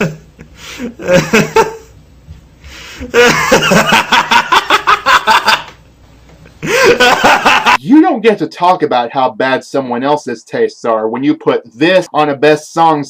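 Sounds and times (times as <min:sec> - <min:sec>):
person laughing: 0:00.0 - 0:01.9, 0:02.9 - 0:05.8, 0:06.6 - 0:07.8.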